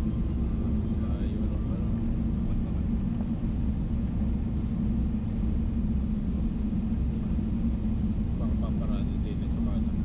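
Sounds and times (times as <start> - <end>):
aircraft cabin rumble: 0.0 - 10.0
jet engines idling: 0.0 - 10.0.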